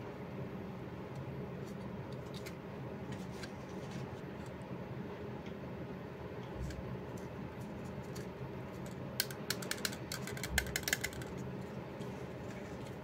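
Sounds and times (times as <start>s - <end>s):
computer mouse clicks: 8.8s - 11.3s.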